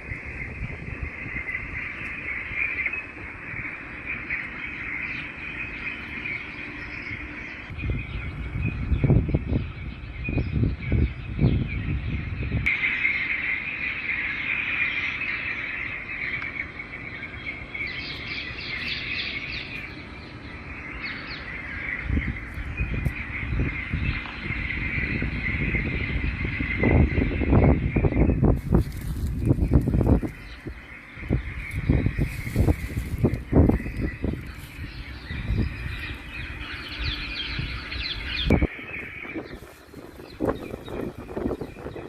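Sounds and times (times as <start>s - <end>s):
birds chirping: 0.0s - 42.0s
insects chirping: 0.0s - 42.0s
low rumble: 22.0s - 42.0s.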